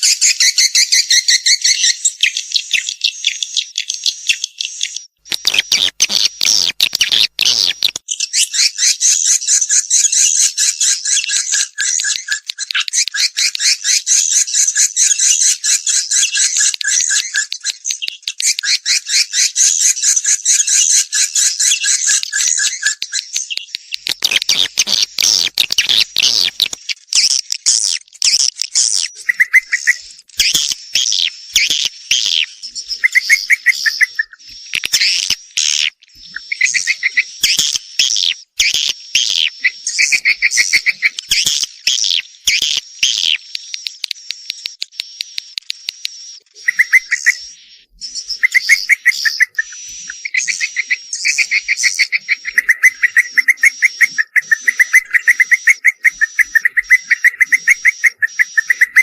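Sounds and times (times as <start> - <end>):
high chittering bird trills: 0.0 - 59.0
harsh crackling clicks: 5.3 - 8.0, 11.2 - 13.6, 22.4 - 32.6, 34.4 - 36.4, 37.4 - 54.8.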